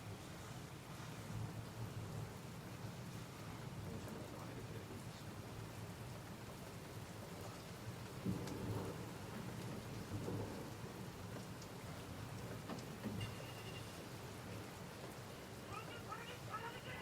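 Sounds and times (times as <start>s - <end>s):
steady rain falling: 0.0s - 17.0s
low rumbles of thunder: 7.7s - 14.8s.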